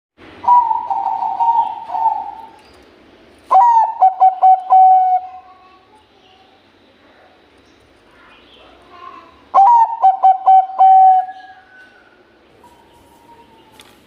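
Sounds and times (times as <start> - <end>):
dove cooing: 0.4 - 2.6, 3.5 - 5.4, 9.5 - 13.5.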